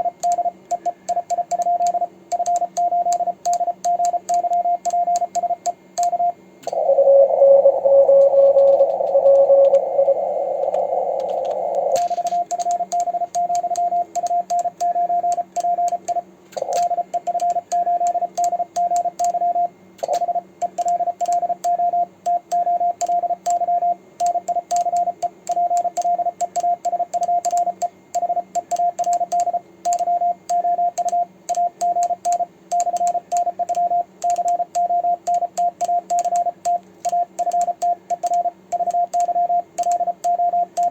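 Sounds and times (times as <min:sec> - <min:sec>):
sidetone keyed in dits and dahs: 0:06.1 - 0:19.0
morse code tone with band hiss: 0:28.2 - 0:40.9.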